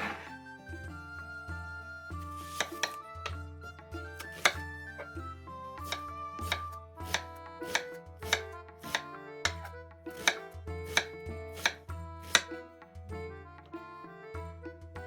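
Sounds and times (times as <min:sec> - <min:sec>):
background music: 0:00.0 - 0:15.0
knife chopping on cutting board: 0:02.3 - 0:03.4, 0:04.1 - 0:05.1, 0:05.8 - 0:12.6.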